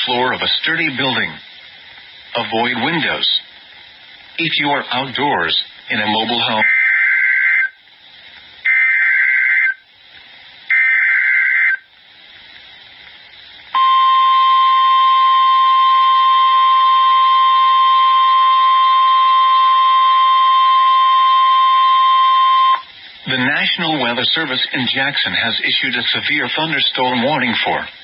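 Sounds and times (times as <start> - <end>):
buzzy digital data bursts: 8.6 - 9.9, 10.7 - 11.9
loud steady alert tone: 8.7 - 9.8, 10.7 - 11.9, 13.8 - 22.9.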